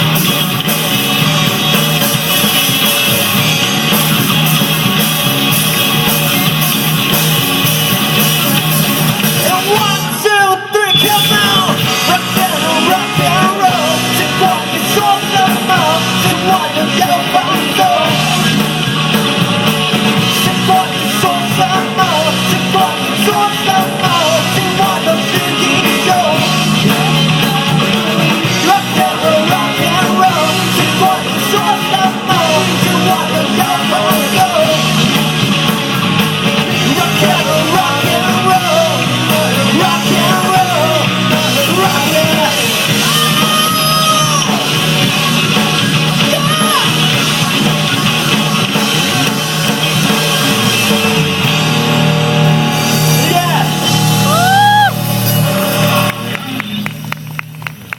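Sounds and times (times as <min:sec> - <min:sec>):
rock band playing: 0:00.0 - 0:57.9
singing and shouted vocals: 0:07.6 - 0:56.9.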